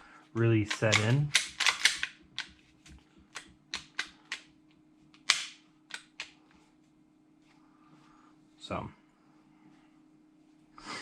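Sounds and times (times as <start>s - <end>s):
pistol slide racking clacks: 0.6s - 2.5s.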